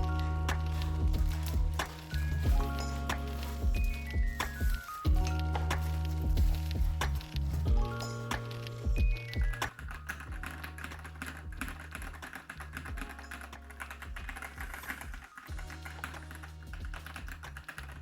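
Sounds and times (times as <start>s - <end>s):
background music with bass line: 0.0s - 18.0s
mechanical keyboard typing: 8.4s - 18.0s.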